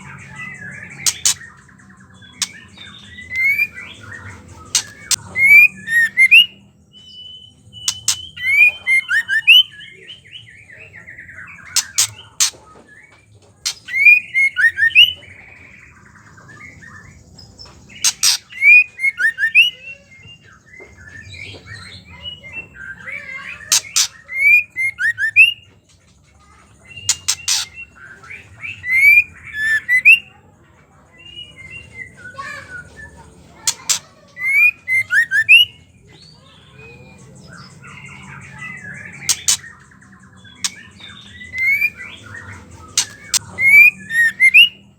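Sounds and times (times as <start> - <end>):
bird chattering call: 0.0 - 6.6, 7.8 - 9.7, 11.3 - 12.7, 13.6 - 15.4, 17.9 - 20.0, 22.1 - 25.6, 26.4 - 30.4, 31.7 - 44.9.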